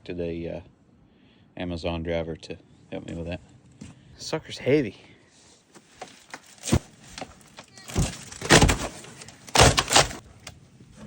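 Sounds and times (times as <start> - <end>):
box scraping: 6.0 - 10.2
heavy box thudding: 6.5 - 10.2.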